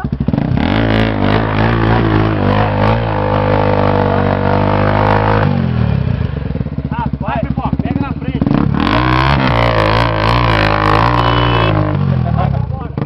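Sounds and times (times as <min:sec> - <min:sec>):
motorcycle engine revving: 0:00.0 - 0:13.0.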